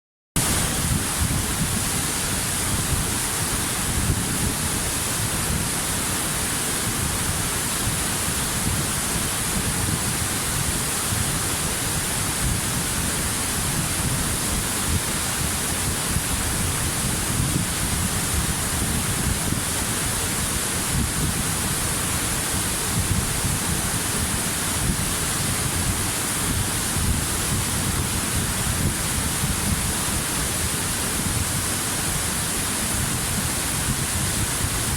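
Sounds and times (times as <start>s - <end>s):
waterfall rushing: 0.4s - 34.9s.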